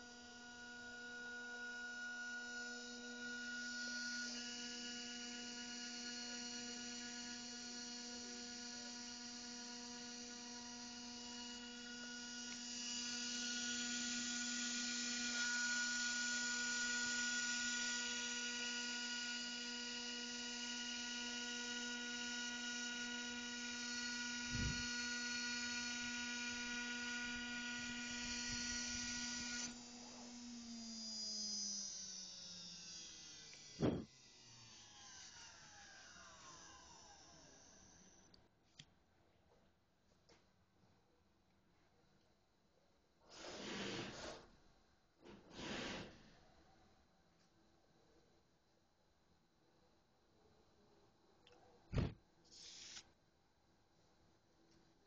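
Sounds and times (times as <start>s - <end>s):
router spindle whine: 0.0s - 38.4s
cutting hiss: 43.3s - 44.5s, 45.4s - 46.2s, 52.0s - 53.1s.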